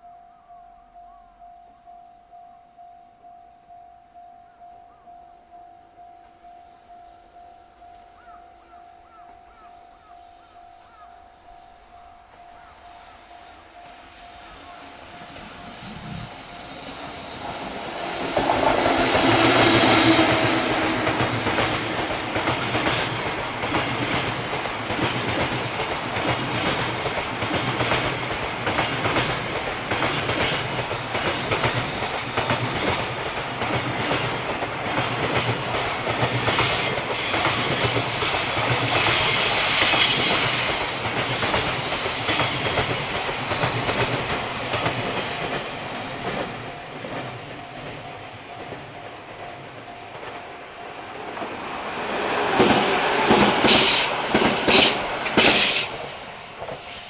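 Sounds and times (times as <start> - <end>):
freight train passing: 8.2 - 57.0
wheels clacking over rail joints: 16.4 - 39.3, 51.2 - 57.0
high wheel squeals: 35.8 - 43.4.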